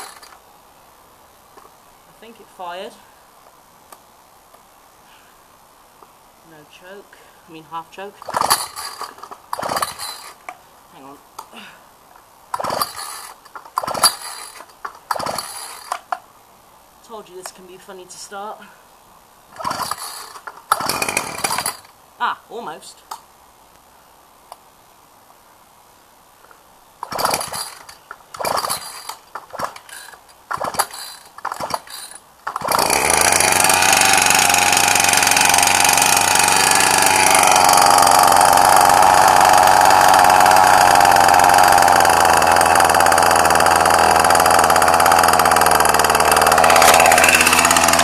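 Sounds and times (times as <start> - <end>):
recoil starter pulls: 0.0 - 0.4, 8.2 - 10.5, 12.5 - 16.1, 19.6 - 21.9, 27.0 - 48.0
small petrol engine running: 8.2 - 10.4, 12.6 - 15.9, 19.6 - 21.9, 27.0 - 48.0.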